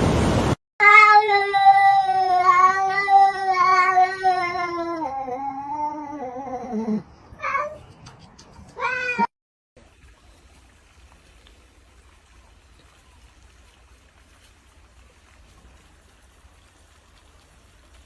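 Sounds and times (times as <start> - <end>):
cat yowling and meowing: 0.8 - 7.8, 8.8 - 9.3.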